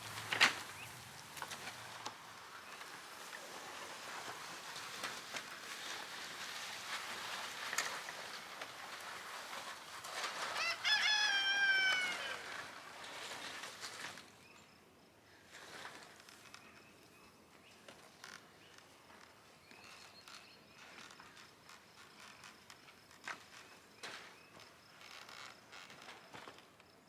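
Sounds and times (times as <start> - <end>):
rooster crowing: 10.5 - 12.6.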